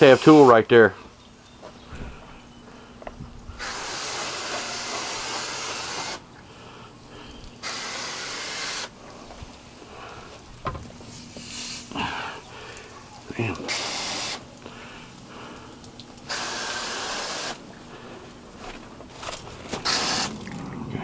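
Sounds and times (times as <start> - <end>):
hissing spray: 0.0 - 0.7, 3.6 - 6.2, 7.6 - 9.0, 11.0 - 11.9, 13.5 - 14.6, 16.2 - 17.6, 19.8 - 20.4.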